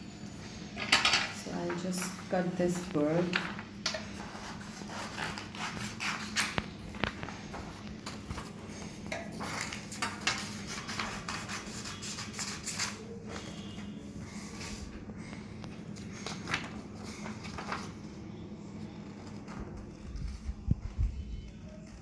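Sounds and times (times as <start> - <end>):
faint low hum: 0.0 - 22.0
paper rustling: 1.7 - 15.1, 15.7 - 20.9
scissors snipping paper: 3.9 - 7.2.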